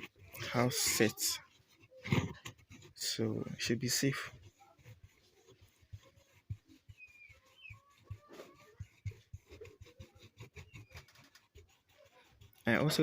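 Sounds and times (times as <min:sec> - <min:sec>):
hand rubbing a surface: 0:00.0 - 0:13.0
faint squeaks: 0:03.1 - 0:13.0.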